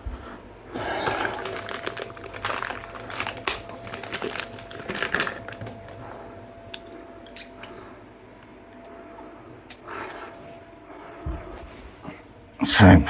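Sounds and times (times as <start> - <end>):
plastic hose rustling: 0.9 - 6.2.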